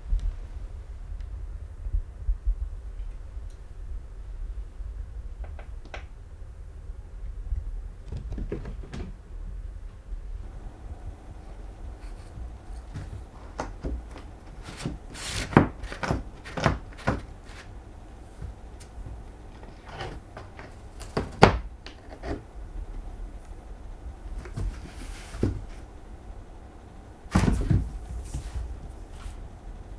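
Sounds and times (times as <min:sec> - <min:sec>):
cat clambering knocks and bumps: 0:08.0 - 0:09.3, 0:11.3 - 0:22.5, 0:24.3 - 0:25.9, 0:27.3 - 0:29.2.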